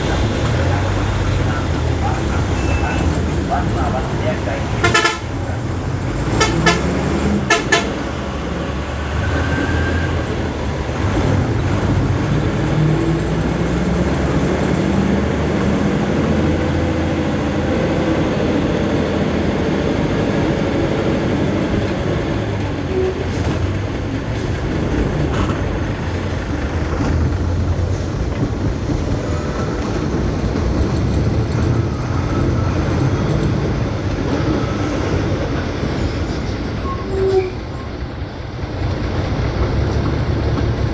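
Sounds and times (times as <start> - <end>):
heavy vehicle engines running: 0.0 - 40.9.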